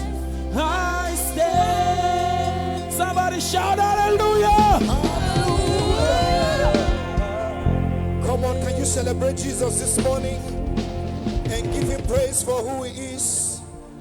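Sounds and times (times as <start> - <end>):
gospel singing: 0.0 - 14.0
instrumental accompaniment with bass: 0.0 - 14.0.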